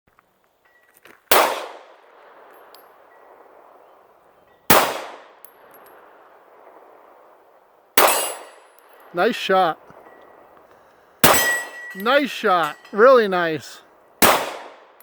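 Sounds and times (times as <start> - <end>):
pistol shots: 1.3 - 1.9, 4.7 - 5.3, 11.2 - 12.4, 14.2 - 14.9.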